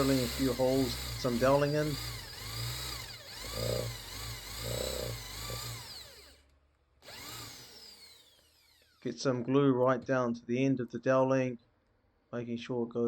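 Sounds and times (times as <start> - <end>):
power drill boring into wood: 0.0 - 9.1.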